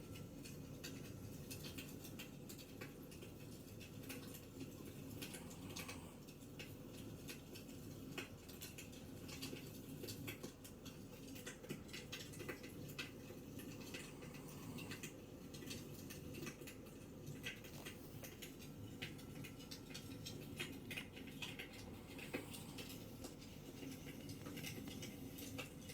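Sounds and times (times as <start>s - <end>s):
fire crackling and popping: 0.0s - 25.9s
steady low hum: 13.2s - 25.9s.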